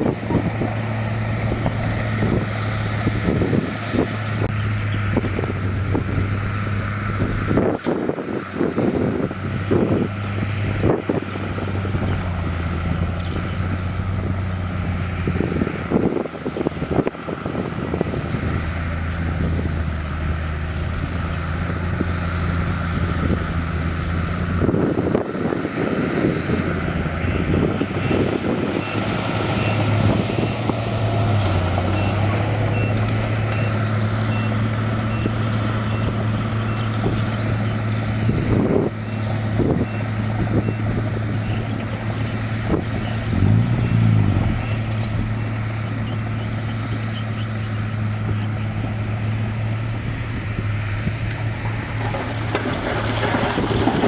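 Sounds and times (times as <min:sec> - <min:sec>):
heavy diesel machinery running: 0:00.0 - 0:54.0
reversing beeper: 0:31.9 - 0:37.2
clanking and rattling: 0:47.9 - 0:54.0.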